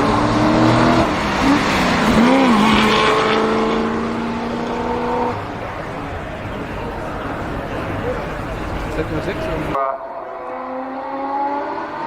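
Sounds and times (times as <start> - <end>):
engine revving hard: 0.0 - 5.4, 9.9 - 12.0.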